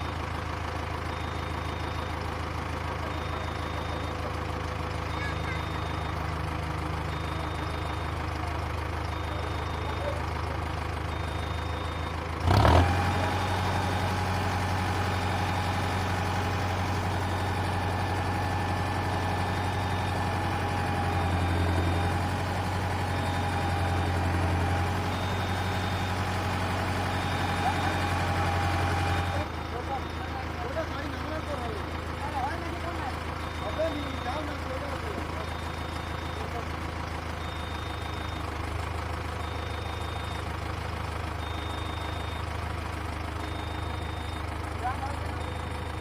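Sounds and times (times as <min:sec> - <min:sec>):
heavy vehicle engine running: 0:00.0 - 0:46.0
faint short beeps: 0:01.1 - 0:10.5, 0:14.9 - 0:31.7, 0:32.3 - 0:38.6, 0:41.4 - 0:42.5, 0:43.4 - 0:46.0.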